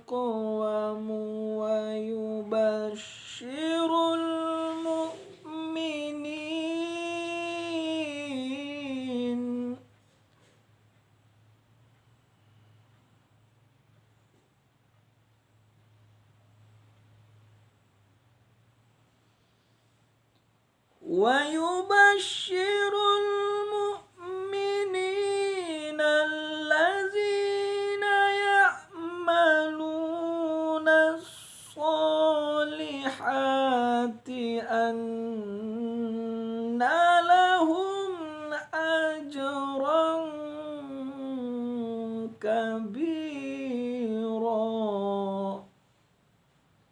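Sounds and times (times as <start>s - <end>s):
person reciting melodically: 0.0s - 10.0s, 21.0s - 45.8s.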